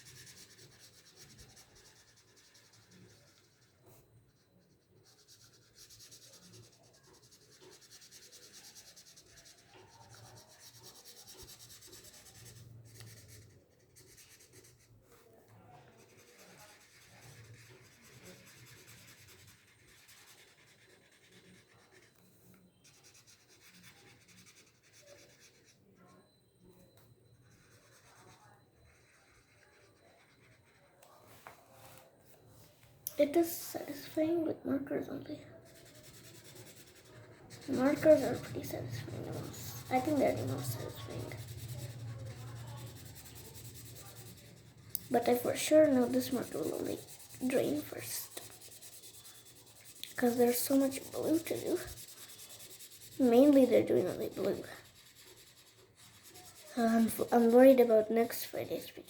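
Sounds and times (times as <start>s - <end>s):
felt-tip marker scratching paper: 0.0s - 14.9s, 15.9s - 22.1s, 22.8s - 26.1s, 27.5s - 30.9s, 35.4s - 58.0s.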